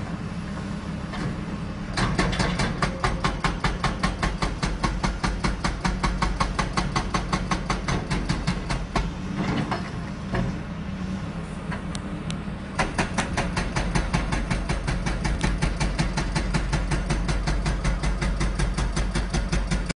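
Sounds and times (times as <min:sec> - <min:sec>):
diesel engine running: 0:00.0 - 0:19.9
hydraulic breaker hammer pounding: 0:01.9 - 0:09.9, 0:12.8 - 0:19.9.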